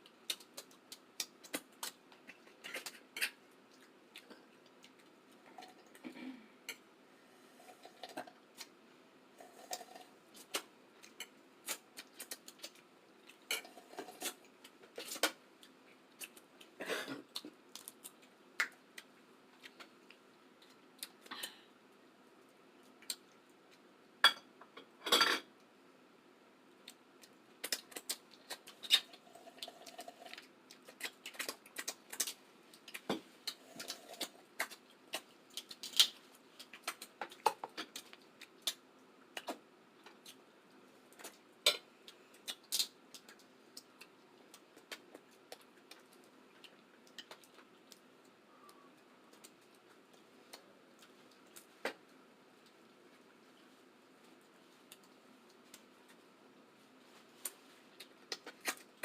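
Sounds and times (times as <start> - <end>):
clatter of shells and dishes: 24.3 - 25.5.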